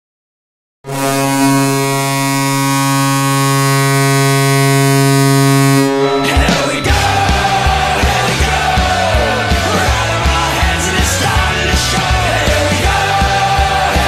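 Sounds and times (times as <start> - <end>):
goal horn blast: 0.9 - 9.6.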